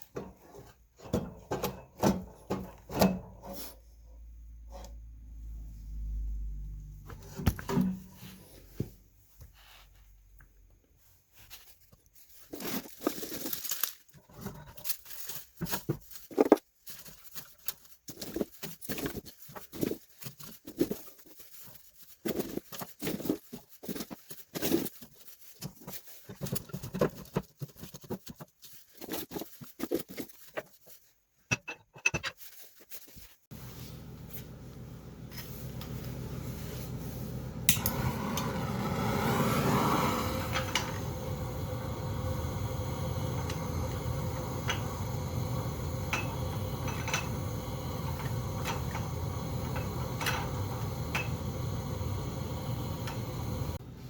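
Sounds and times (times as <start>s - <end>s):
steady low hum: 33.5s - 54.0s.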